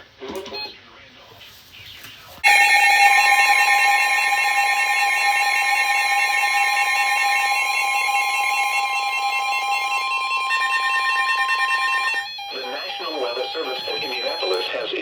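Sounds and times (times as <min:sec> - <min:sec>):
other steady alarm tones: 0:02.4 - 0:15.0
steady warning alarm tone: 0:02.4 - 0:15.0.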